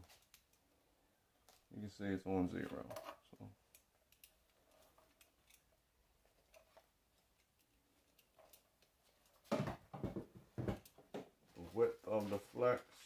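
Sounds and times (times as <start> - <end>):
tools clicking: 3.7 - 5.8, 6.4 - 9.4.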